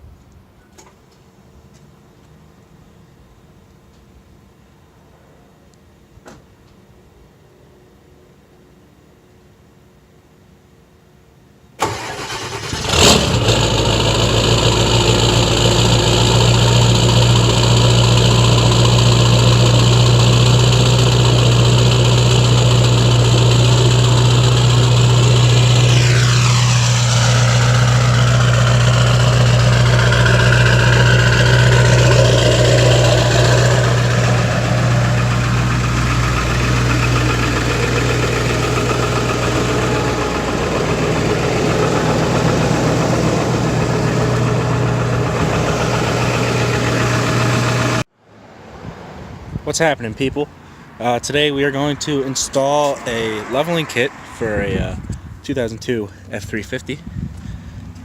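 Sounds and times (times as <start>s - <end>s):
pickup engine idling: 11.8s - 48.1s
high-pitched engine whine sweeping down: 11.9s - 48.1s.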